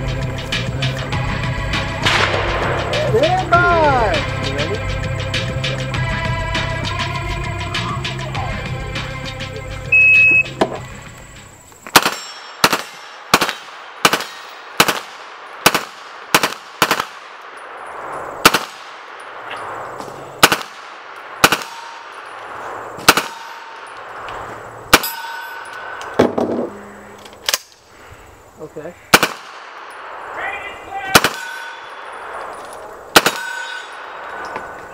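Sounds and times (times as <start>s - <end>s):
shot timer beep: 9.9s - 10.5s
submachine gun single shots: 11.9s - 17.6s, 18.3s - 19.8s, 20.4s - 26.3s, 29.1s - 30.2s, 31.1s - 34.5s.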